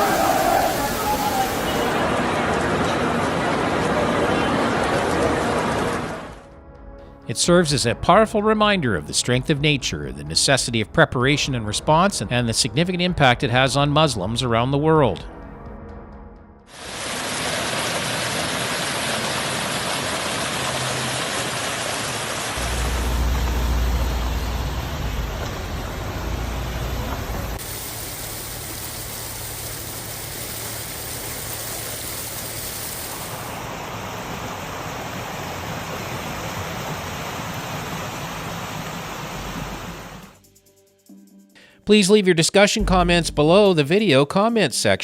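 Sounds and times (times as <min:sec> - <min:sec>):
floodwater rushing: 0:00.0 - 0:06.5, 0:16.7 - 0:40.4
heavy rain: 0:00.0 - 0:06.5, 0:16.7 - 0:40.4
deep rumble: 0:22.6 - 0:27.6.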